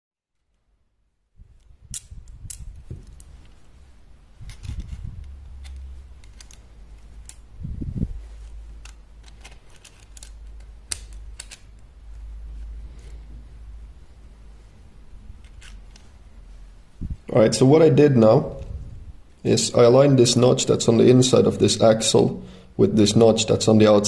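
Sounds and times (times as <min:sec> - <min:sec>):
small metal clicks and rattles: 0:04.4 - 0:07.5, 0:08.8 - 0:11.8.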